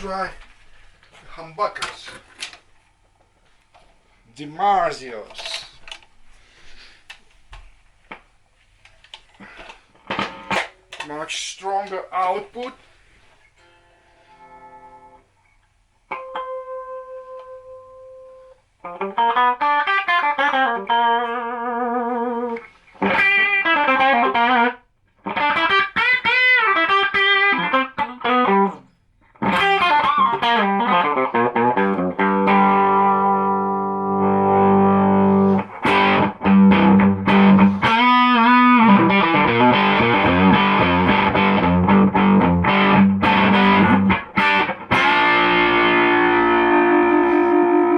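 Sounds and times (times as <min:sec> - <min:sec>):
electric guitar playing: 0:13.6 - 0:15.3, 0:16.1 - 0:47.9.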